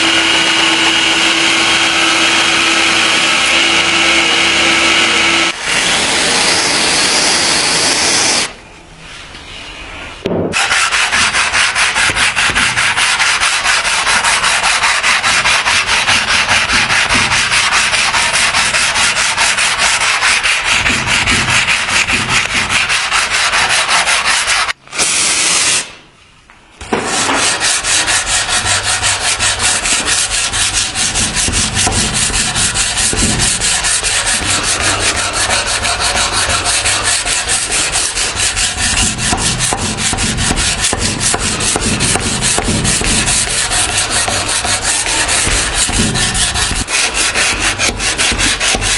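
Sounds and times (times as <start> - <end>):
sanding a knife blade: 10.6 - 24.8, 27.0 - 48.9.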